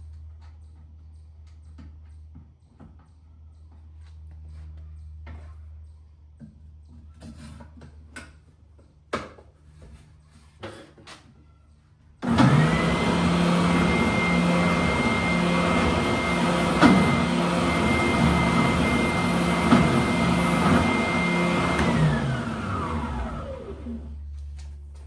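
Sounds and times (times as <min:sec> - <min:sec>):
sander motor whining: 0:12.2 - 0:24.2.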